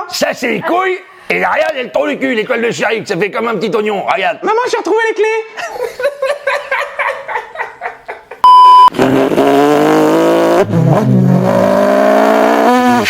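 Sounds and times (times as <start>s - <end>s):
censor bleep: 8.4s - 9.0s.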